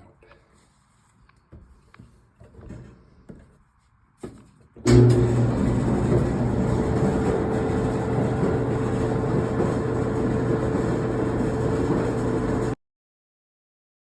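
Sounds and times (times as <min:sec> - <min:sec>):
clothes dryer humming and whirring: 0:04.9 - 0:12.8.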